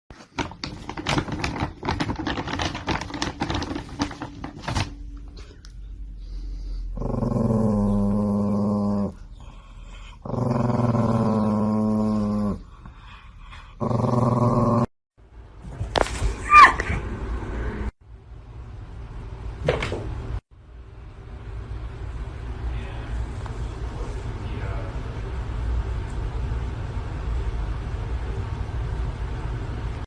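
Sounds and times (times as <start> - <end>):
dog growling: 6.5 - 14.9.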